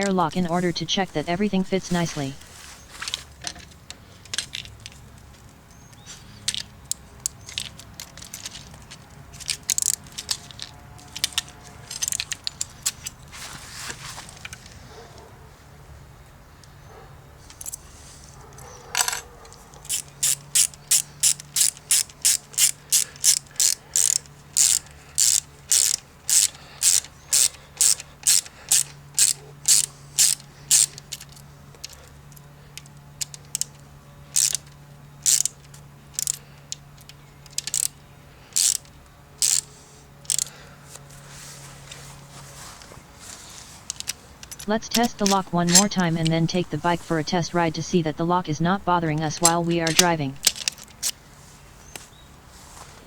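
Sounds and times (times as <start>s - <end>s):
small hard parts clicking: 6.4s - 13.2s, 32.8s - 40.5s.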